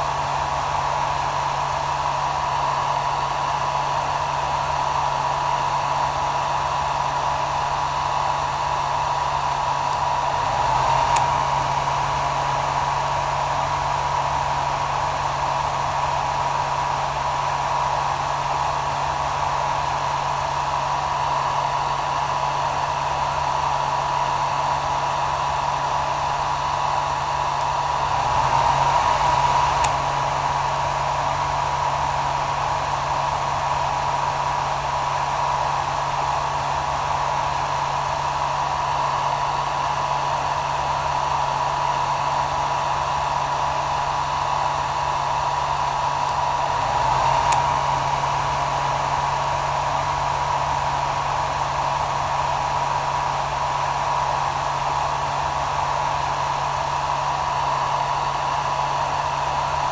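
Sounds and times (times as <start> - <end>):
hair dryer running: 0.0 - 59.9
faint click: 46.3 - 47.8.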